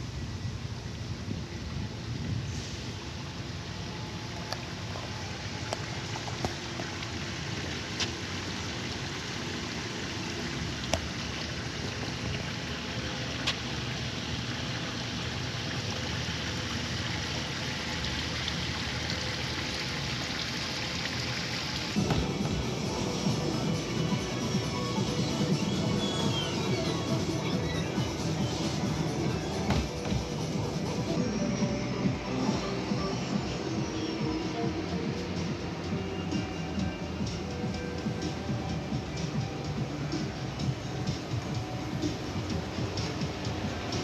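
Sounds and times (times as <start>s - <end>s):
water rushing: 0.6s - 44.0s.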